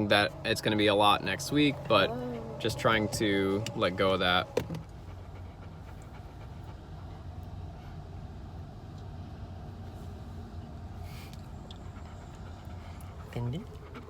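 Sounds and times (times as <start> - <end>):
road and engine rumble in car: 0.0 - 14.0.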